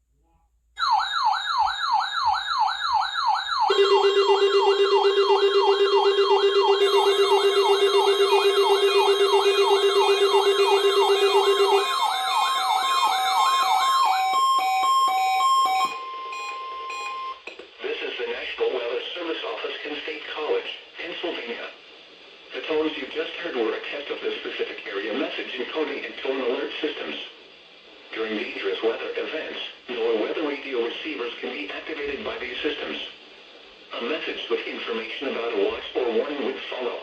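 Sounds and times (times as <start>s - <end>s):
electronic siren sweeping: 0.8s - 16.0s
warbling high tones: 3.7s - 14.4s
steady tone with beeping: 3.7s - 15.7s.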